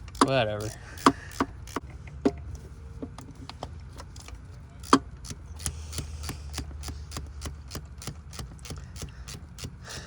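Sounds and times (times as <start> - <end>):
hand ratchet clicking: 0.0 - 1.8, 4.8 - 10.0.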